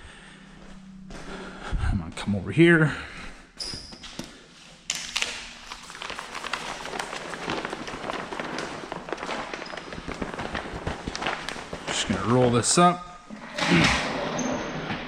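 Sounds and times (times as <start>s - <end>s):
plastic film crackling: 4.9s - 12.7s.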